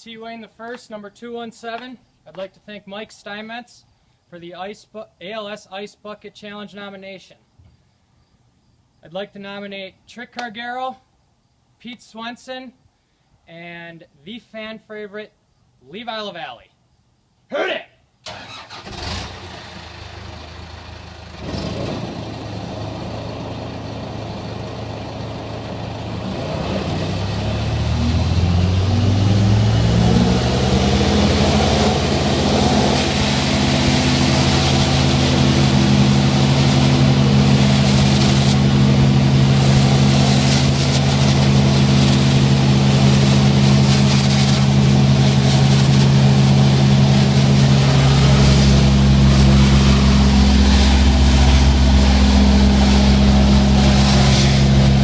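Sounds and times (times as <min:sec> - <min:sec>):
truck engine revving: 0:18.3 - 0:55.0.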